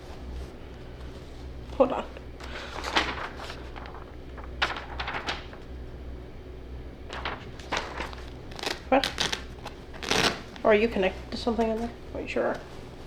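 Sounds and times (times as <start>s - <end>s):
fabric rustling and scraping: 0.0s - 5.7s, 7.1s - 13.0s
steady low hum: 0.0s - 13.0s.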